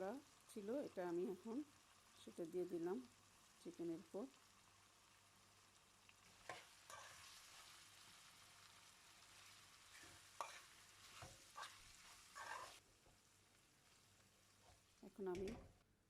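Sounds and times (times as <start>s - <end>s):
chicken sizzling in a pan: 0.0s - 16.0s
spatula scraping and knocking: 9.9s - 12.8s.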